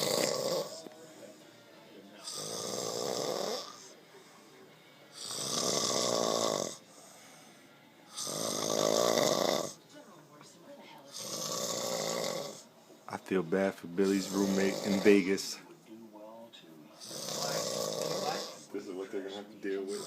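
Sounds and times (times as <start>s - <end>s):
man snoring: 0.0s - 0.9s, 2.2s - 4.0s, 5.1s - 7.2s, 8.1s - 9.8s, 11.1s - 12.7s, 14.0s - 15.5s, 17.0s - 18.7s, 19.8s - 20.0s.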